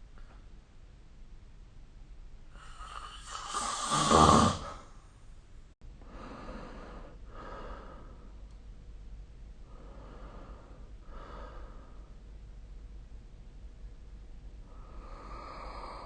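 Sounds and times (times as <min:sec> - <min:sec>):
person snoring: 0:02.6 - 0:04.9, 0:14.7 - 0:16.0
soft breaths: 0:06.0 - 0:08.6, 0:09.6 - 0:12.4, 0:14.6 - 0:16.0.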